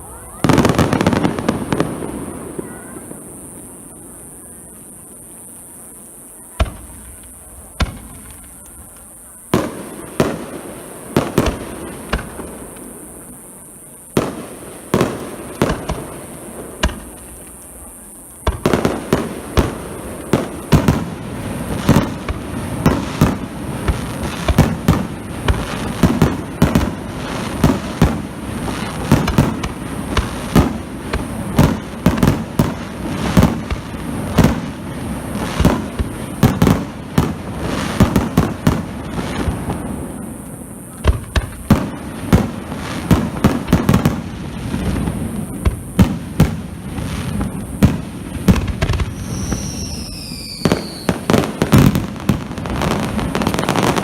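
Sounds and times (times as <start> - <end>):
firework bursts with echo: 0.0 - 54.0.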